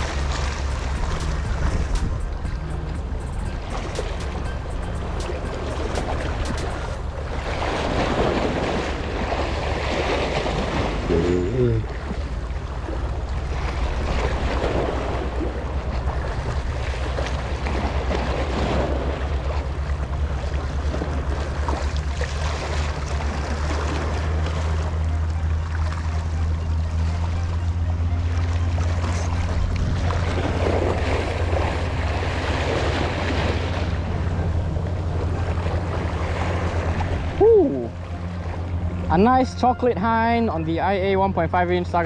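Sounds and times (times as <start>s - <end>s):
wind buffeting microphone: 0.0s - 11.1s, 29.4s - 37.6s
sea waves on rocky shore: 0.0s - 42.0s.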